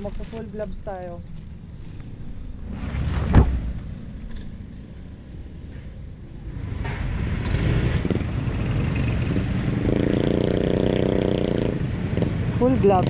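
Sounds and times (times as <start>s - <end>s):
scooter engine pulling away: 7.1s - 12.5s.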